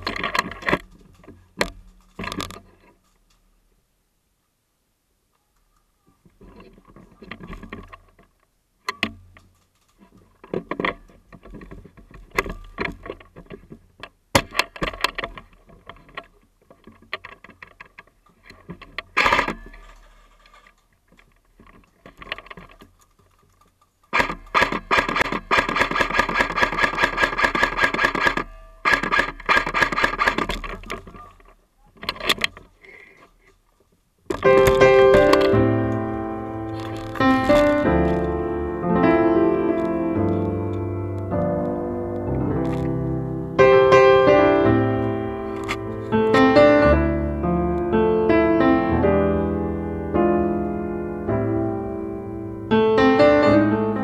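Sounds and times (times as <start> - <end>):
airsoft gun shots: 24.1 - 30.5
rapid automatic airsoft fire: 24.1 - 30.5.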